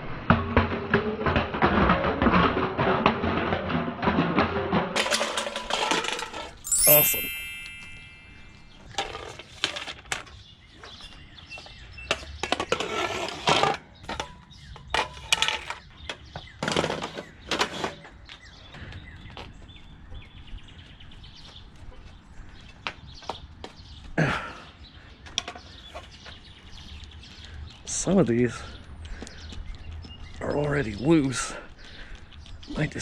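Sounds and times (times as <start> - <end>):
clamps and poles clicking and knocking: 0.6 - 6.7.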